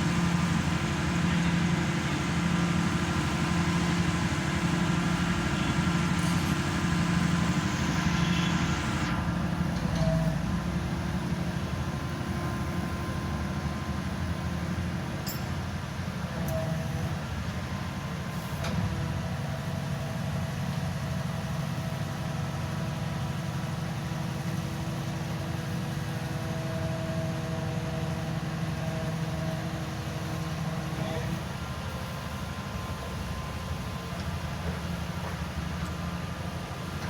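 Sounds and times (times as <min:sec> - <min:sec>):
high whine: 0:00.0 - 0:09.5
pile driver engine humming: 0:00.0 - 0:15.2.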